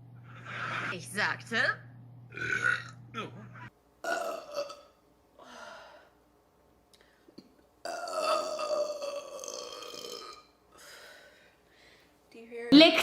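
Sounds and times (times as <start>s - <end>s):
long burp: 2.3s - 3.4s, 4.0s - 5.0s, 7.8s - 10.5s.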